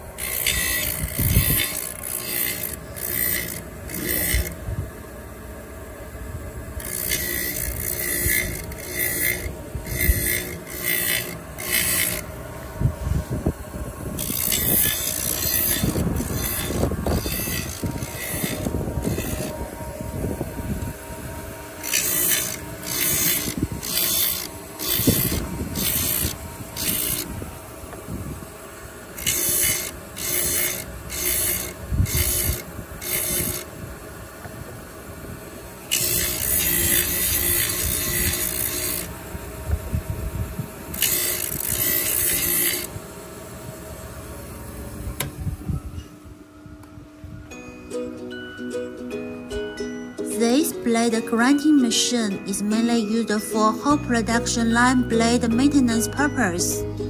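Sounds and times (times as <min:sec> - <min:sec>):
grinding wheel rasping on steel: 0:00.0 - 0:04.7, 0:06.8 - 0:27.5, 0:29.0 - 0:33.7, 0:35.8 - 0:39.6, 0:40.8 - 0:43.0
low steady hum: 0:00.0 - 0:57.0.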